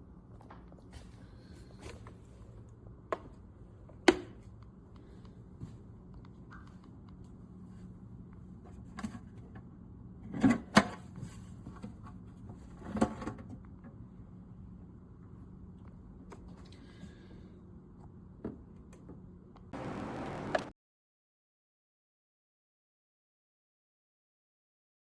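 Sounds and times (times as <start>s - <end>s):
low steady hum: 19.8s - 20.7s.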